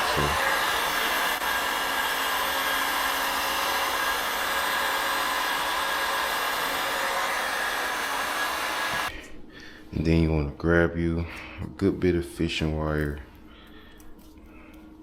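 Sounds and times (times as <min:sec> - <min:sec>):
heat gun blowing air: 0:00.0 - 0:09.1.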